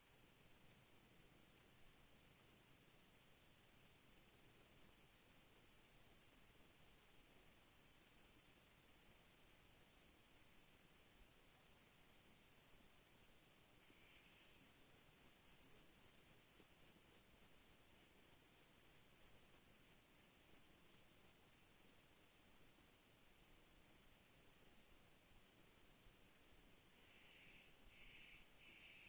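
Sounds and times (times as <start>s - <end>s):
insects trilling: 2.3s - 29.0s
insect pulsing call: 13.1s - 21.6s, 25.7s - 29.0s.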